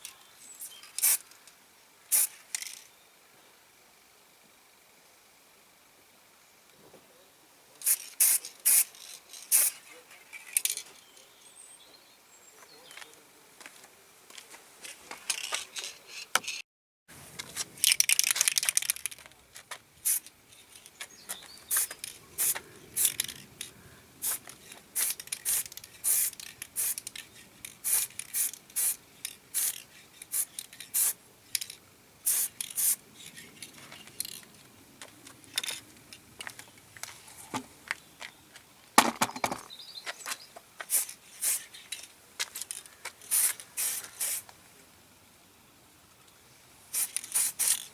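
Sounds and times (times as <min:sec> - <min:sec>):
spray paint hissing: 0:00.6 - 0:01.2, 0:02.1 - 0:02.8, 0:07.8 - 0:09.8, 0:20.0 - 0:34.4, 0:40.8 - 0:44.5, 0:46.9 - 0:47.9.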